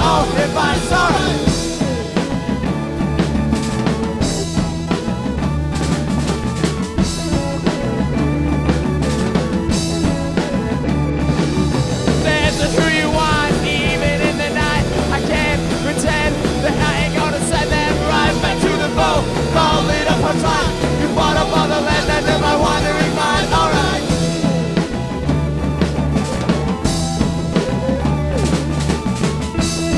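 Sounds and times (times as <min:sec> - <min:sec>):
bass: 0:00.0 - 0:29.9
drum beat: 0:00.0 - 0:29.9
wavering high lead melody: 0:00.0 - 0:29.9.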